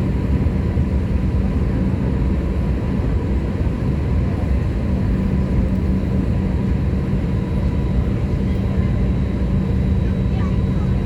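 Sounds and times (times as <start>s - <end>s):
deep jet engine rumble: 0.0s - 11.0s.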